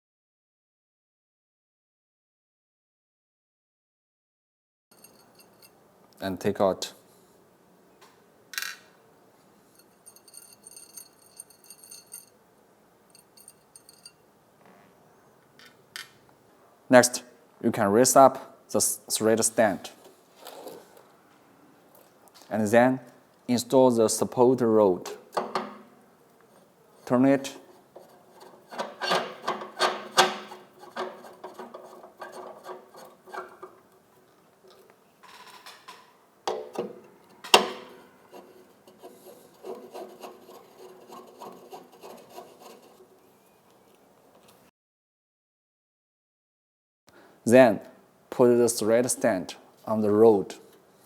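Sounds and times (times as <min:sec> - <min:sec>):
small metal parts clinking: 0:09.8 - 0:12.3, 0:13.1 - 0:14.2
rod rasping scrapes: 0:26.5 - 0:33.8, 0:38.0 - 0:43.1.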